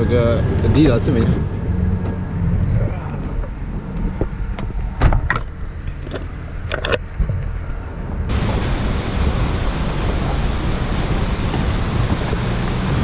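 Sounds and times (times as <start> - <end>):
car rumbling in motion: 0.0 - 13.0
steady rushing noise: 7.2 - 13.0.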